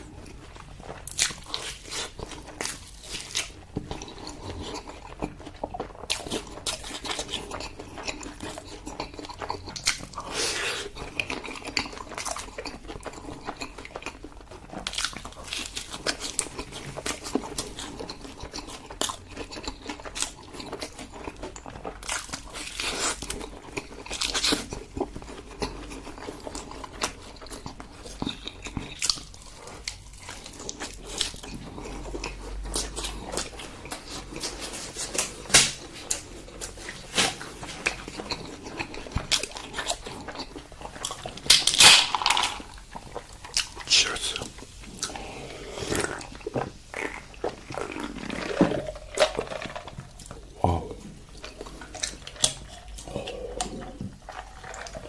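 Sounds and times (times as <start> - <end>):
person biting and chewing: 0.0 - 55.0.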